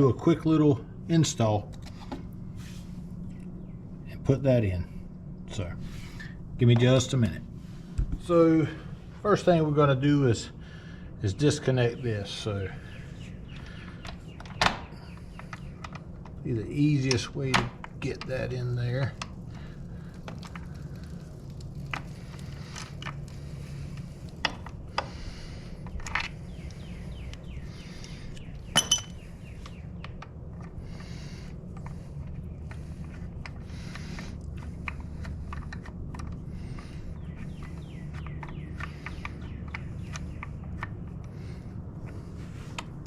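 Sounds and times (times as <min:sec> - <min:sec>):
steady low hum: 0:00.0 - 0:43.0
hand tools clinking on metal: 0:28.8 - 0:29.2
ringing metal clink: 0:28.8 - 0:29.2.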